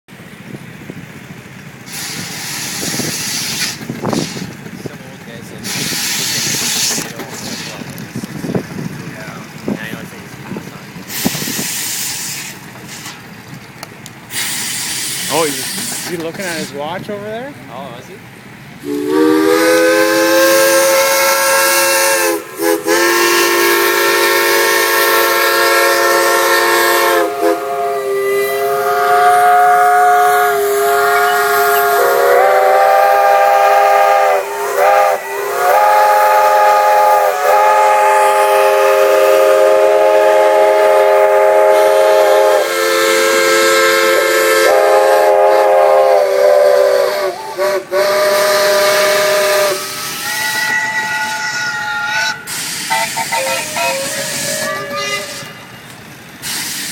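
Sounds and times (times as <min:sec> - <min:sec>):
steam hissing: 0:01.8 - 0:13.4, 0:14.2 - 0:17.0, 0:18.8 - 0:56.9
steam whistles blowing: 0:18.8 - 0:56.9.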